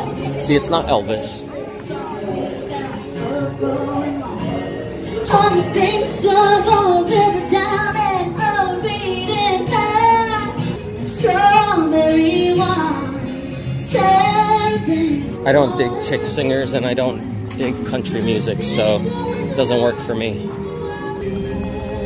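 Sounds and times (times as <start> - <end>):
woman singing country song: 1.7 - 16.5, 18.2 - 22.0.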